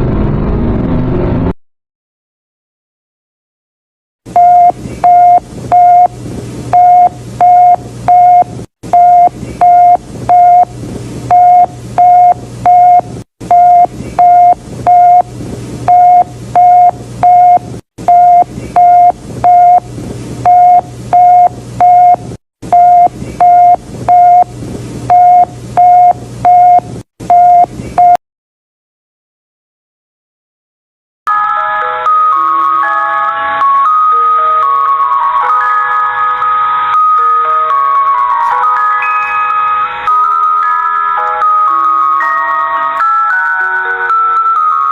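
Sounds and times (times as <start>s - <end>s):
alarm beeping: 4.4s - 6.1s, 11.3s - 15.3s.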